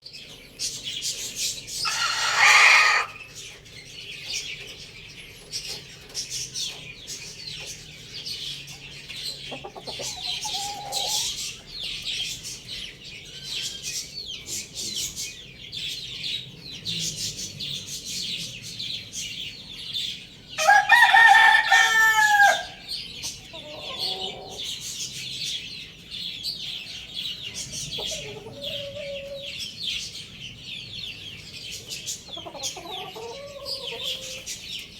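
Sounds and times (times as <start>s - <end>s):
small birds chirping: 0.0s - 34.9s
chicken clucking: 0.6s - 12.6s, 20.6s - 25.6s, 26.7s - 34.9s
rooster crowing: 1.8s - 3.2s, 20.6s - 22.9s.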